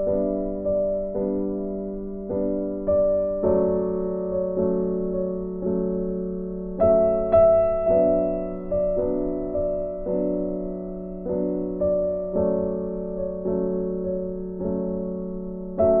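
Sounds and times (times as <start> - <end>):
soft piano notes: 0.0 - 16.0.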